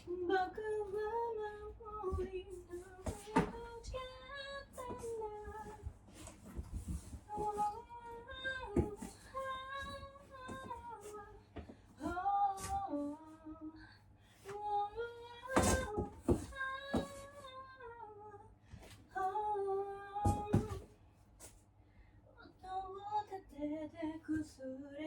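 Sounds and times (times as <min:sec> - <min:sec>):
woman singing and humming: 0:00.0 - 0:06.0, 0:06.8 - 0:18.5, 0:19.1 - 0:20.9, 0:22.4 - 0:25.0.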